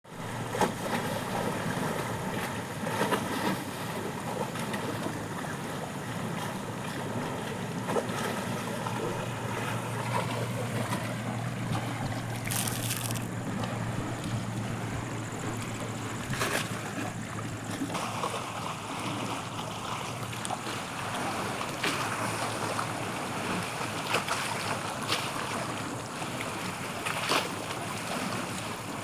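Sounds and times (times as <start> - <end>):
canal water rushing: 0.1 - 25.7
low steady hum: 6.8 - 19.0.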